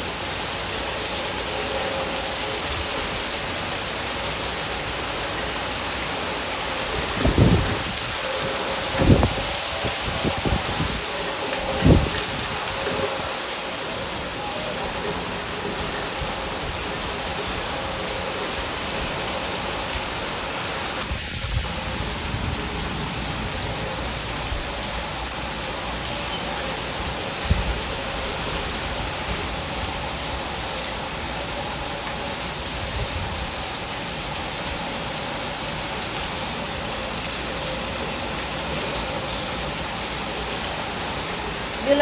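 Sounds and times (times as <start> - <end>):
heavy rain falling: 0.0 - 42.0.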